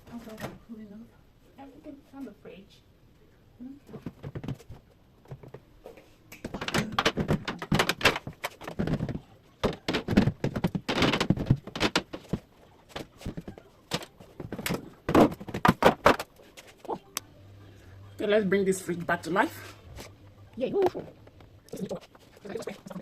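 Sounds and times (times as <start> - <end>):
items clattering from refrigerator: 6.5 - 16.9.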